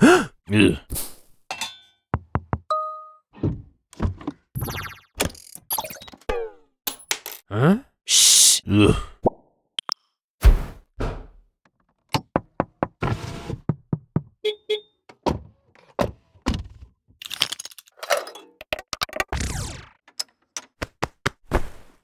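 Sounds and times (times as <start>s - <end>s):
foley knocks and thunks: 2.2s - 2.7s, 12.2s - 14.4s, 20.7s - 22.0s.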